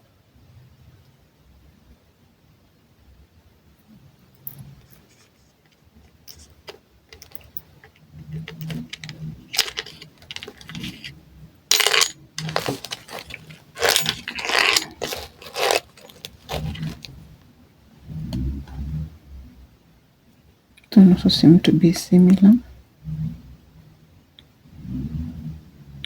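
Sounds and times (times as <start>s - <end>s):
metal drill bits clinking: 7.1s - 11.1s, 11.7s - 17.1s.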